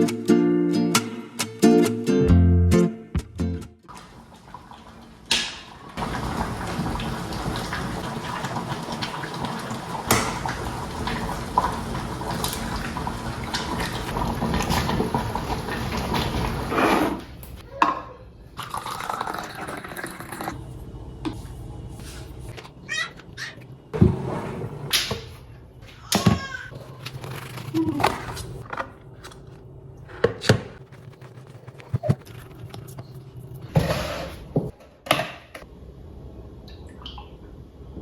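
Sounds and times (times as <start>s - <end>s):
water running from tap: 3.9s - 17.2s.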